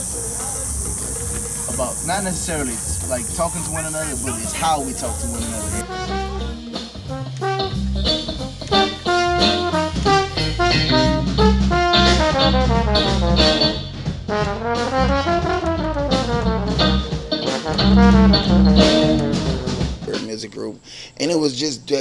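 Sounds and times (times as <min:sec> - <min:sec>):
steady low beat: 0:00.0 - 0:05.8
trumpets and trombones melody: 0:05.8 - 0:19.7.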